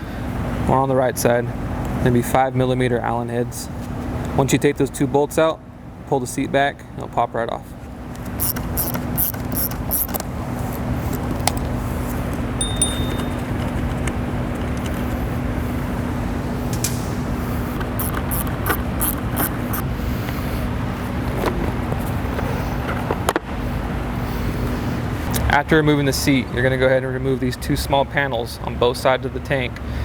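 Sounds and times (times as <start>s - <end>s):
steady low hum: 6.8s - 30.0s
tools and bolts clinking: 12.6s - 14.0s.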